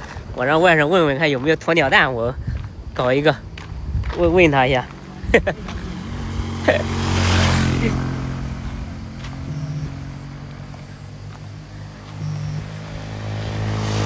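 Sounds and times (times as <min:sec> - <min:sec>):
small engine idling: 0:02.8 - 0:14.0.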